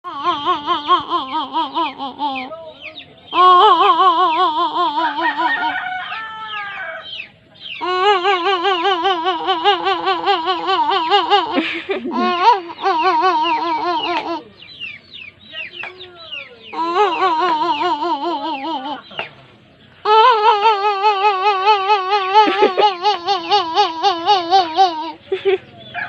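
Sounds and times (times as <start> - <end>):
baby warbling: 0.0 - 2.6, 3.3 - 5.8, 7.8 - 14.5, 15.8 - 19.2, 20.1 - 25.2
squeaky gliding baby sounds: 0.0 - 2.6, 3.3 - 5.9, 7.8 - 14.5, 15.8 - 19.3, 20.0 - 25.2.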